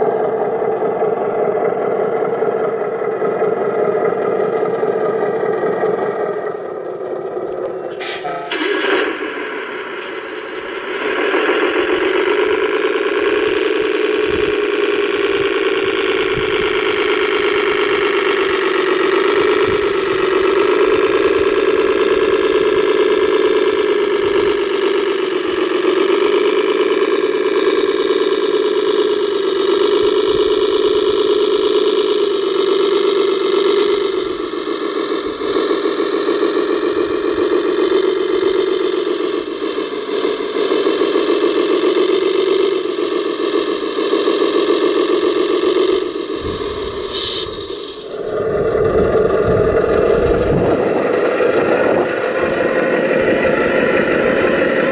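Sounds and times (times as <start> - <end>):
model vehicle engine drone: 0.0 - 54.9.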